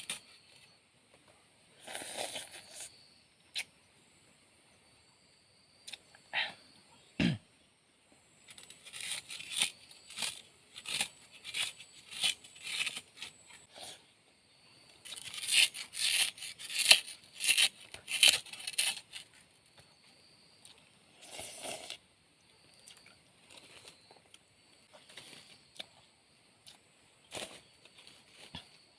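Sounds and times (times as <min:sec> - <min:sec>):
rough rasping strokes: 0:08.5 - 0:13.9, 0:15.0 - 0:19.3.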